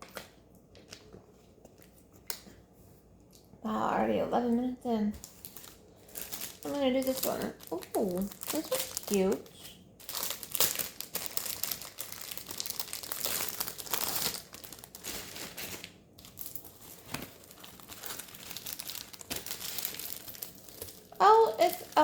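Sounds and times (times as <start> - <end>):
packaging rustling and crackling: 5.2 - 22.0.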